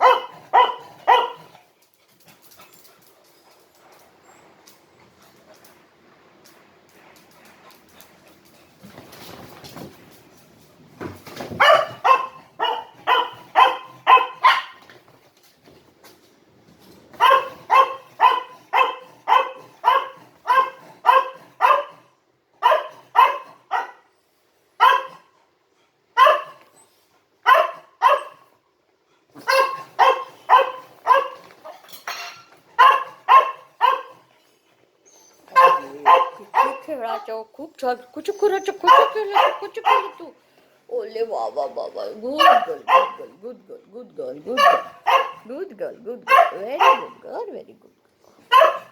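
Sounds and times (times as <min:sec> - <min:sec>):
dog barking: 0:00.0 - 0:01.5, 0:11.6 - 0:14.8, 0:17.2 - 0:22.0, 0:22.6 - 0:24.1, 0:24.8 - 0:25.3, 0:26.2 - 0:26.6, 0:27.4 - 0:28.5, 0:29.4 - 0:31.4, 0:32.8 - 0:34.2, 0:35.5 - 0:37.3, 0:38.8 - 0:40.2, 0:42.4 - 0:43.3, 0:44.6 - 0:45.5, 0:46.3 - 0:47.2, 0:48.5 - 0:48.9.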